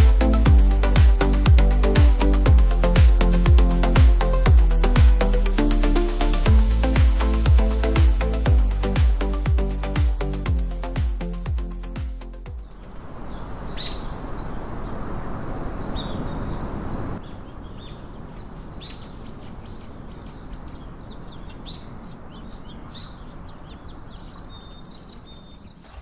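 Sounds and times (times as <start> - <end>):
steady rushing noise: 0.0 - 13.6.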